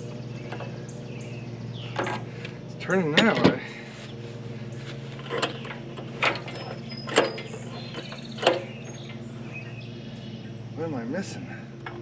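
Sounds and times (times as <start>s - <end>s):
steady low hum: 0.0s - 12.0s
recoil starter pull with clunk: 1.9s - 3.8s, 5.2s - 9.2s.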